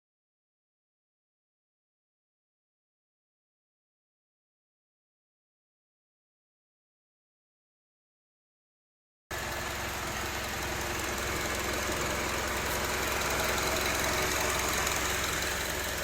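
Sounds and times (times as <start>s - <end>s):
car engine idling: 9.3s - 16.0s.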